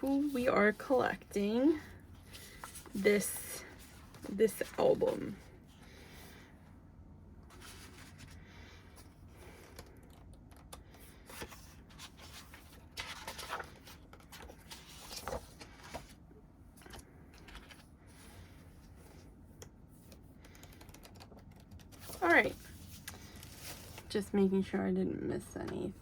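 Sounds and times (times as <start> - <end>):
paper and cardboard rustling: 7.5 - 8.4, 11.2 - 16.2.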